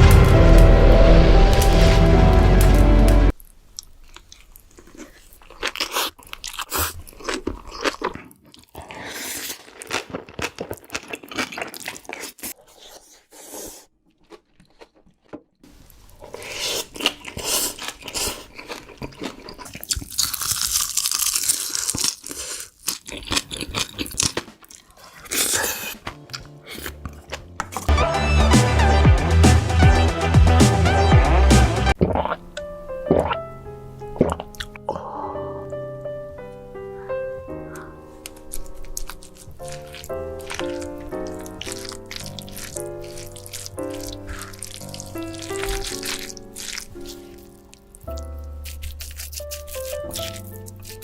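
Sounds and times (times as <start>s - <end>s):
music: 0.0s - 3.3s, 26.0s - 51.0s
person chewing food: 3.3s - 27.9s, 31.9s - 33.4s, 34.1s - 35.4s, 37.5s - 51.0s.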